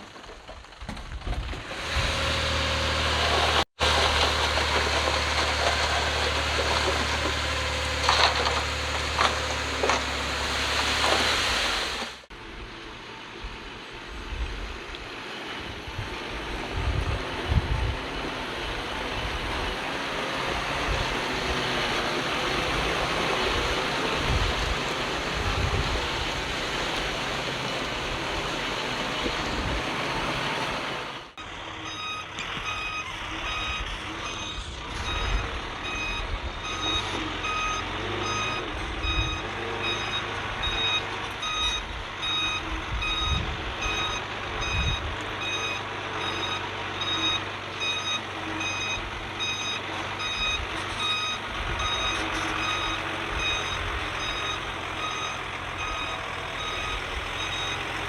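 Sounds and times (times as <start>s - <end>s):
heavy machinery rumbling: 0.0s - 58.0s
diesel engine running: 1.4s - 58.0s
backup alarm beeping: 31.4s - 58.0s.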